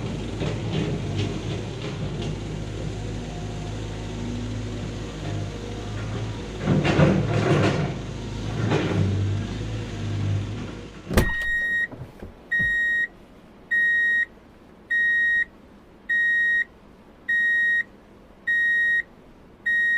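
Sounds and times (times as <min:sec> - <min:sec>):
heavy diesel engine running: 0:00.0 - 0:11.8.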